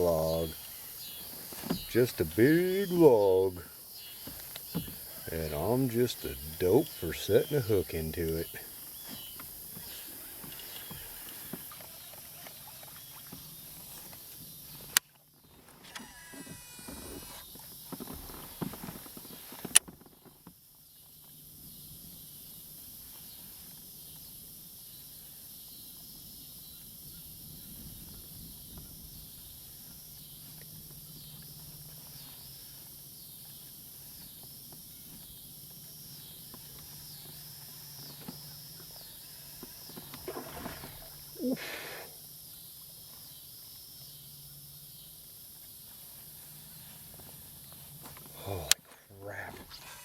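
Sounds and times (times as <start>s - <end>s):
high hiss: 0.0s - 12.0s, 40.8s - 42.4s
insects chirping: 0.0s - 50.0s.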